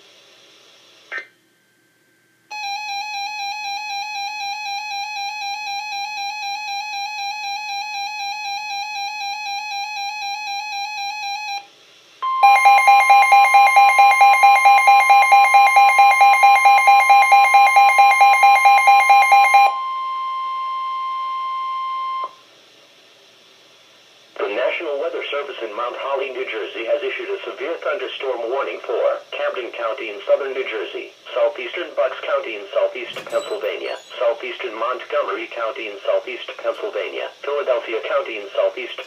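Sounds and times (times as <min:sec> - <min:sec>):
pulsing beeping alarm: 0:02.5 - 0:22.4
steady warning alarm tone: 0:02.5 - 0:22.4, 0:33.3 - 0:35.0.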